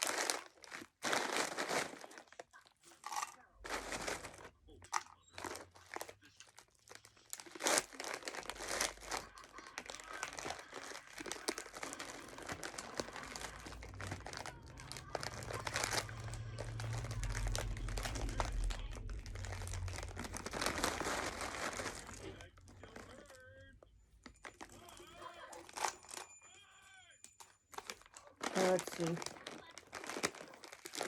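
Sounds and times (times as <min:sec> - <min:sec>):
plastic bags crinkling: 0:00.0 - 0:23.6, 0:24.2 - 0:26.7, 0:27.4 - 0:31.0
low hum: 0:09.8 - 0:24.3.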